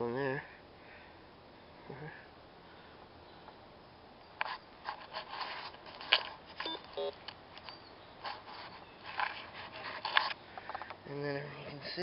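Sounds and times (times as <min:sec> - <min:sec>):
hand scraping through soil: 0:04.8 - 0:06.8, 0:08.2 - 0:10.4
metal detector beeps: 0:06.6 - 0:07.9.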